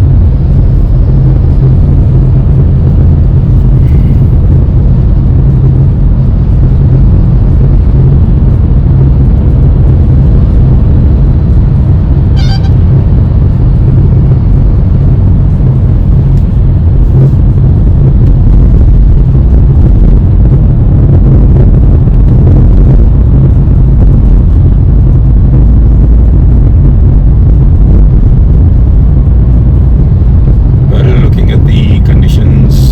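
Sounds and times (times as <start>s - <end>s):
road and engine rumble: 0.0s - 32.9s
brief high-pitched tone: 12.4s - 12.8s.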